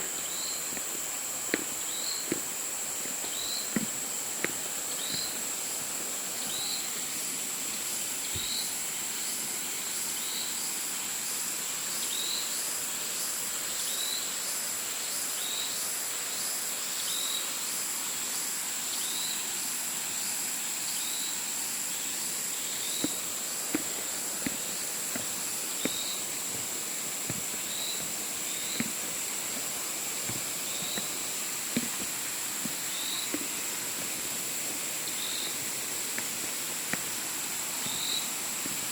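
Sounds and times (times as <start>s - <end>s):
insects droning: 0.0s - 38.9s
steady hiss: 0.0s - 38.9s.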